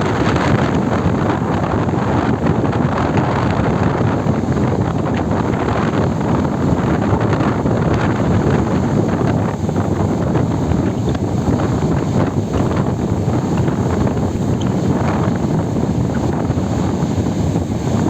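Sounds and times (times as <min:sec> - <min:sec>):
rough sea roaring: 0:00.0 - 0:18.0
wind buffeting microphone: 0:00.0 - 0:18.0.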